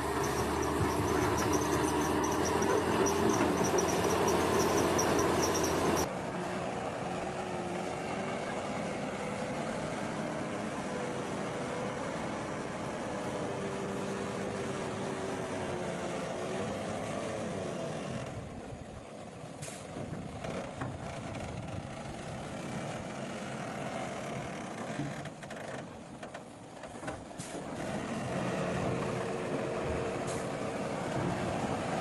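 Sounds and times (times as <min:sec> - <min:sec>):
heavy diesel machinery running: 0:00.0 - 0:24.2.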